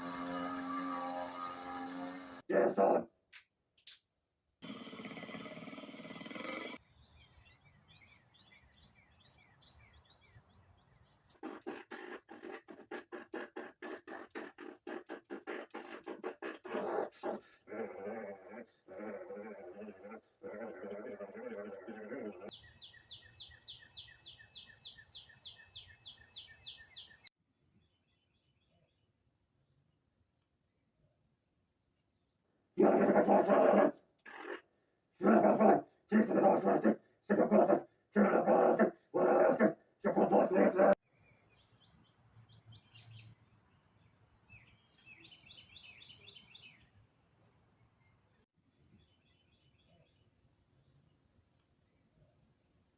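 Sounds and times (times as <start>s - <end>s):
bird chirping: 6.6s - 17.6s, 19.8s - 29.1s, 41.0s - 51.2s.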